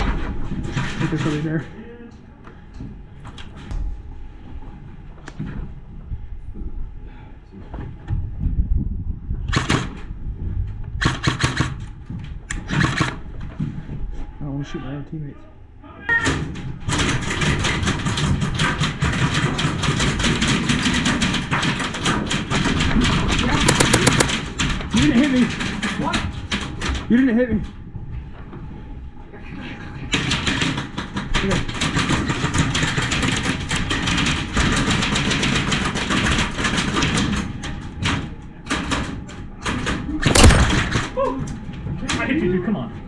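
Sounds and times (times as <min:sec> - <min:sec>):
airsoft guns firing: 0:11.0 - 0:11.8, 0:23.6 - 0:24.5, 0:40.2 - 0:41.2
loud thump: 0:40.3 - 0:41.1.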